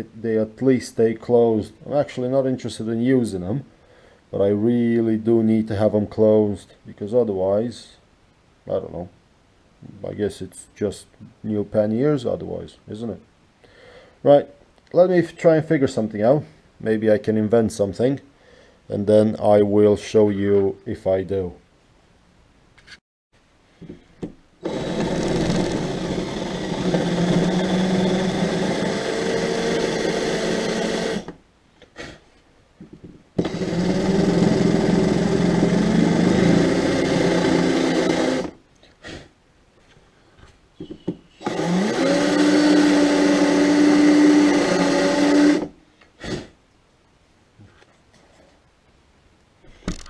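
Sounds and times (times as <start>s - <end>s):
small power tool motor running: 24.6s - 31.3s, 33.4s - 38.5s, 41.4s - 45.7s.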